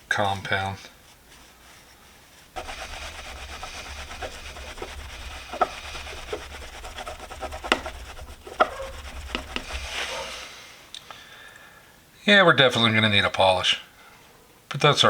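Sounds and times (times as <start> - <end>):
pad scrubbing metal: 2.6 - 10.4.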